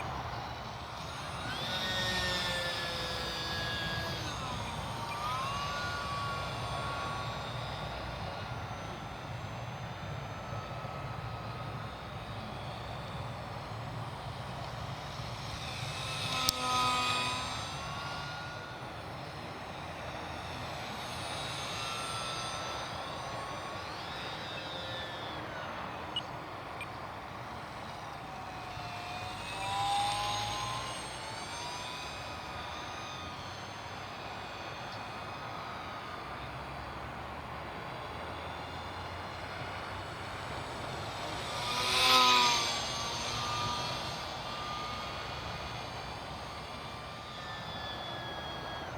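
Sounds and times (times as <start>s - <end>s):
model plane motor whining: 0.0s - 48.9s.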